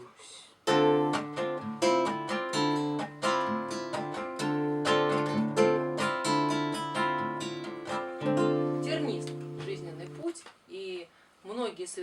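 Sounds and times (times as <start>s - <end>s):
acoustic guitar plucked notes: 0.6s - 10.3s.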